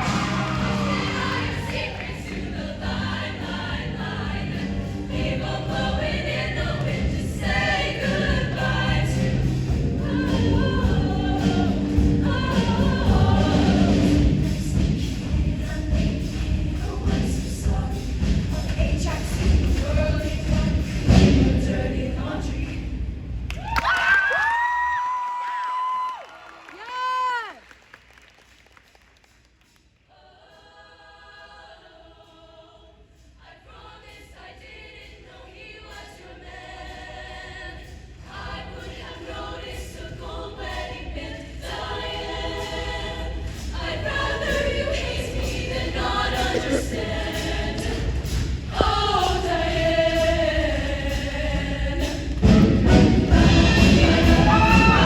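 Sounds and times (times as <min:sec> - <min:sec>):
choir singing in harmony: 0:00.0 - 0:23.3, 0:30.1 - 0:55.0
low musical accompaniment: 0:00.0 - 0:23.3, 0:30.3 - 0:55.0.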